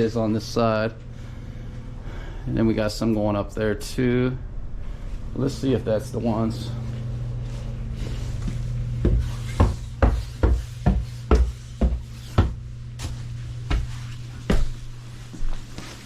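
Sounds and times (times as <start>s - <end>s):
steady low hum: 0.0s - 16.0s
footsteps on wooden stairs: 8.0s - 16.0s.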